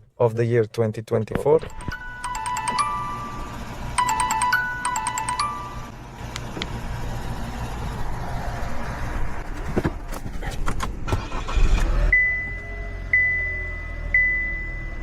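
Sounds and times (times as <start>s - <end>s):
car engine rumbling: 1.5s - 15.0s.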